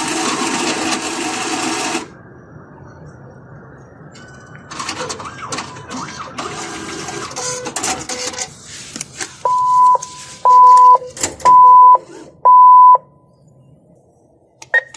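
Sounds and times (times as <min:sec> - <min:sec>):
cash dispenser whirring and clattering: 0:00.0 - 0:02.1, 0:04.7 - 0:12.3
loud even beeps: 0:09.5 - 0:13.1.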